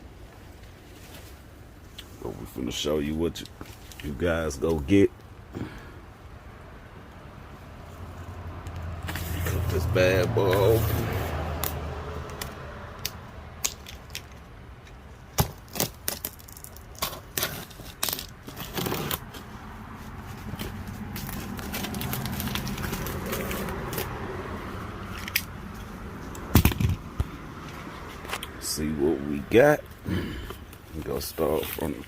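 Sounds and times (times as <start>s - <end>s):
tape and cardboard tearing: 9.0s - 24.3s
cardboard box clicks and scrapes: 15.4s - 19.5s.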